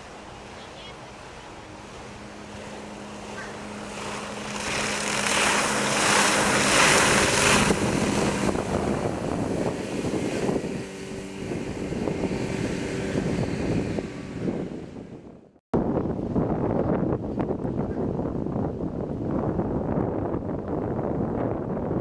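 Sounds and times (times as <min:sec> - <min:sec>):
outboard motor running: 0:00.0 - 0:15.4
water rushing along hull: 0:00.0 - 0:15.5
wind on microphone: 0:00.0 - 0:22.0.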